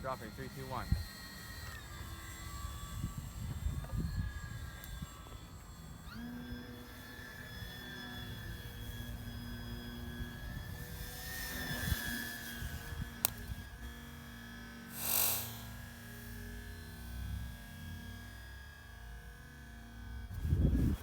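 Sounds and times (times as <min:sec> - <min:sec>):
model airplane motor whining: 0:00.0 - 0:21.0
wind rumble on microphone: 0:02.1 - 0:06.3, 0:07.6 - 0:14.0, 0:20.1 - 0:21.0.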